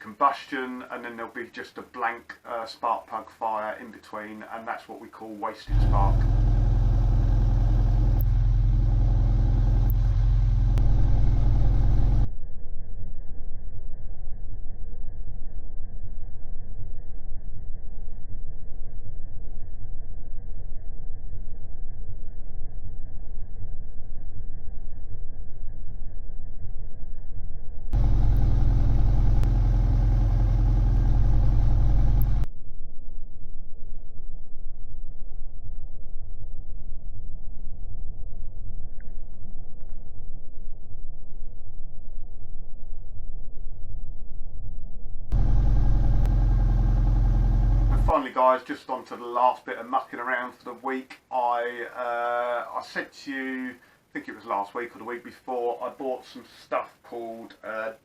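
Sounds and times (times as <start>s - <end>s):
car engine idling: 5.7s - 12.3s, 28.0s - 32.5s, 45.3s - 48.1s.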